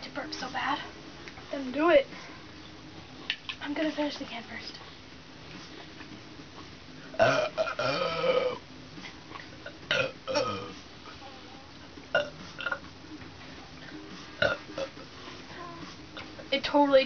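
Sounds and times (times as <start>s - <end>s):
person burping: 7.1s - 8.6s, 9.6s - 10.8s, 12.1s - 12.8s, 14.4s - 15.0s.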